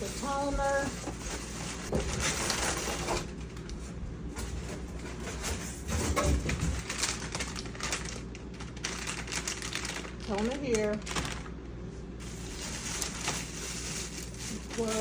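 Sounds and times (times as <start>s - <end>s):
packing materials rustling: 0.0s - 3.5s, 6.7s - 11.6s, 12.2s - 15.0s.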